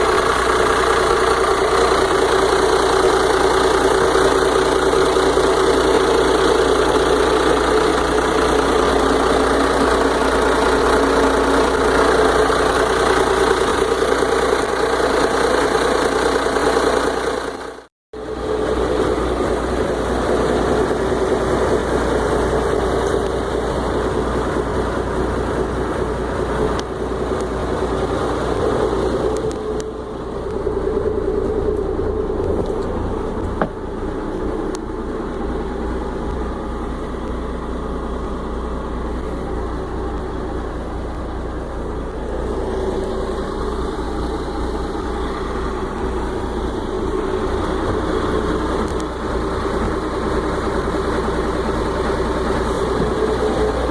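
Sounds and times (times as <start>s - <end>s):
boat engine idling: 0.0s - 53.9s.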